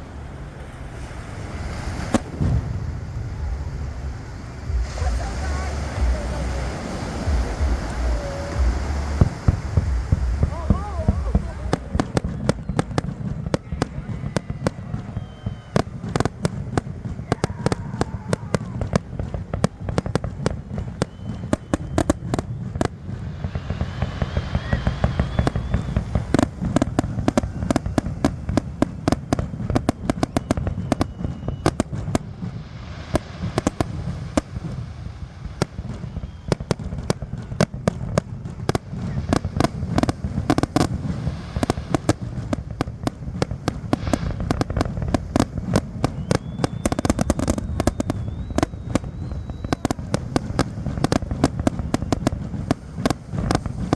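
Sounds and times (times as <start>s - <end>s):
low rumble: 0.0s - 36.5s
fireworks bangs and crackling: 0.0s - 53.9s
rising firework whistles: 0.0s - 53.9s.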